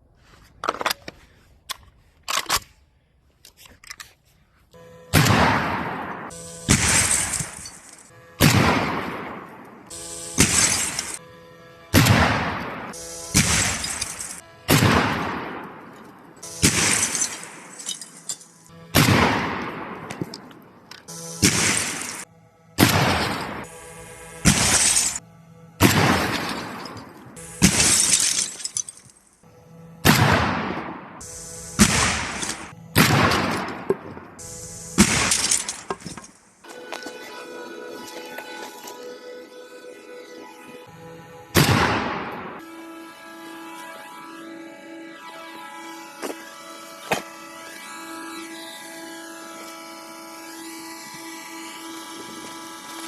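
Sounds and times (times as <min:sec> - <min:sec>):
shotgun shots with echo: 0:05.1 - 0:07.5, 0:08.4 - 0:09.5, 0:12.0 - 0:12.7, 0:13.3 - 0:15.8, 0:16.6 - 0:17.6, 0:18.9 - 0:20.2, 0:21.4 - 0:22.2, 0:22.8 - 0:23.6, 0:25.8 - 0:26.6, 0:30.0 - 0:31.0, 0:31.8 - 0:33.9, 0:35.0 - 0:35.7, 0:41.6 - 0:42.4
target shattering: 0:16.6 - 0:19.4, 0:25.8 - 0:29.2
building material shattering: 0:24.5 - 0:25.2, 0:27.6 - 0:29.2
background music: 0:36.6 - 0:46.3.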